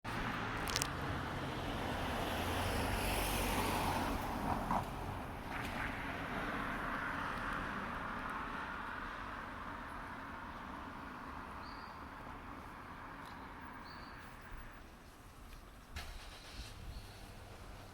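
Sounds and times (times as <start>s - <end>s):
passing vehicle rumble: 0.1s - 14.9s, 15.9s - 17.9s
wind noise on microphone: 15.7s - 17.6s.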